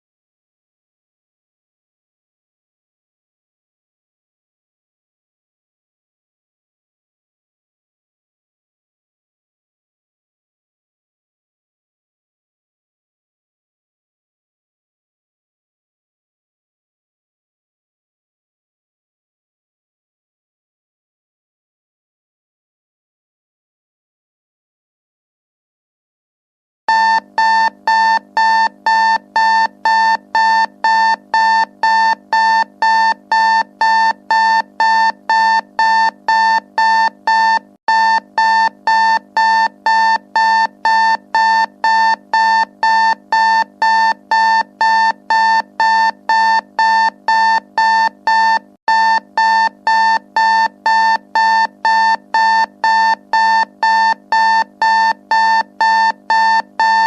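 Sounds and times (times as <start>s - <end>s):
electronic timer alarm beeping: 26.9s - 57.0s.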